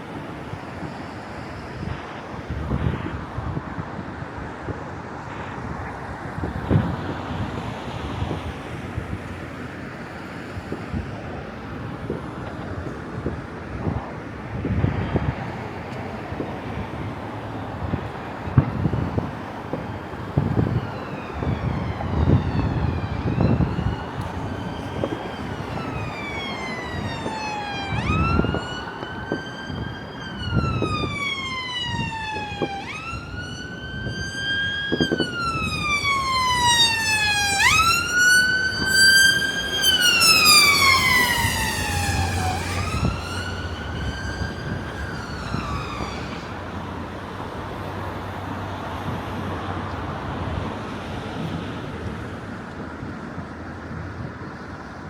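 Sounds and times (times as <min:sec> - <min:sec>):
city background noise: 0:00.0 - 0:55.0
emergency vehicle siren wailing: 0:05.2 - 0:49.9
distant fireworks thumps: 0:24.2 - 0:46.5.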